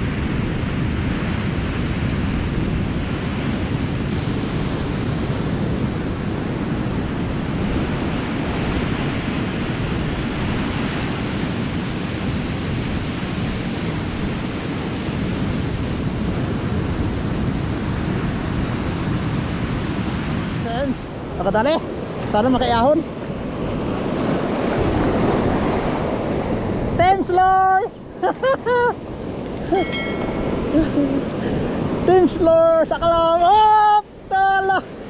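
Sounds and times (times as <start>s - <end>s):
sea surf: 0.0s - 35.0s
wind on microphone: 0.0s - 35.0s.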